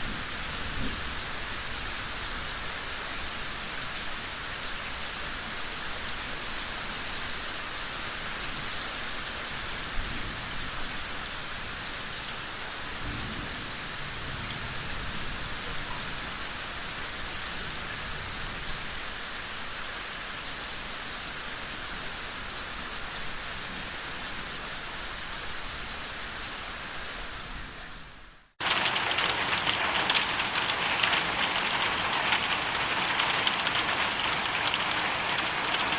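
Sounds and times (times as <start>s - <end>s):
heavy rain pouring: 0.0s - 27.7s, 28.6s - 35.9s.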